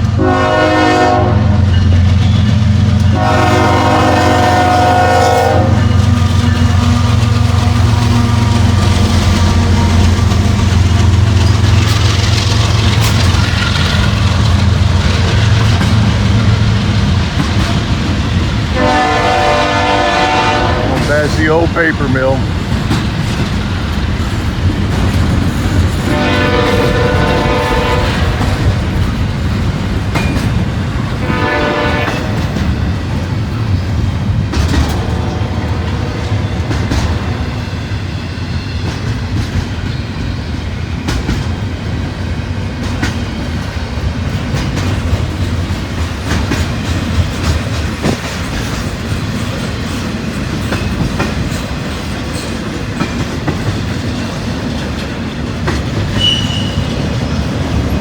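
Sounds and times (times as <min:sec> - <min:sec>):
freight train rumbling: 0:00.0 - 0:58.0
locomotive horn blasts: 0:00.1 - 0:01.7, 0:03.1 - 0:10.2, 0:18.8 - 0:22.4, 0:26.0 - 0:28.7, 0:31.2 - 0:32.5
rail-joint clatter: 0:05.8 - 0:19.0, 0:20.8 - 0:35.4, 0:36.5 - 0:37.4, 0:38.8 - 0:40.0, 0:41.0 - 0:41.7, 0:42.8 - 0:58.0.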